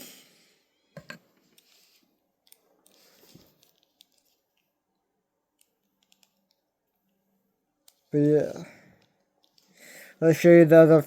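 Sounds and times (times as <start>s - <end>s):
plastic parts clicking and rustling: 2.4s - 4.7s.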